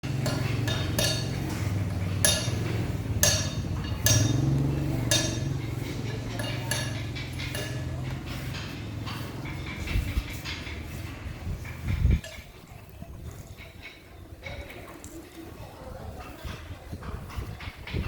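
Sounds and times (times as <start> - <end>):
sharp knocks with clinking ring: 0.0 - 9.7
steady low hum: 0.0 - 12.2.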